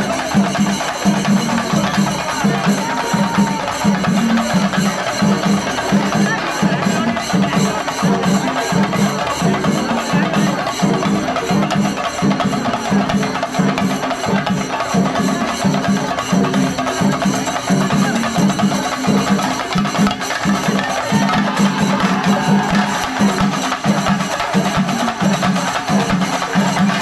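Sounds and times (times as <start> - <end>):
drums beaten fast with sticks: 0.0 - 27.0
hand cymbals shimmering: 0.0 - 27.0
low drum beats: 15.8 - 26.2.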